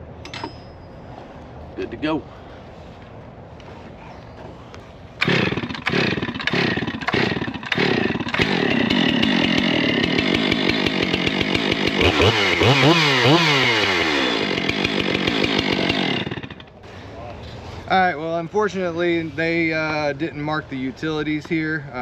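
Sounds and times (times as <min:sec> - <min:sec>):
chainsaw revving: 0:05.2 - 0:16.7.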